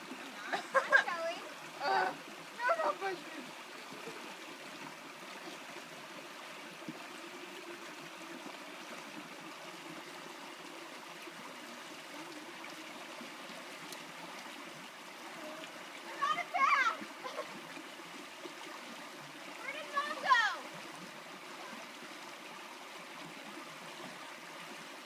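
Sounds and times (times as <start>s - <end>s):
stream water flowing: 0.0s - 25.0s.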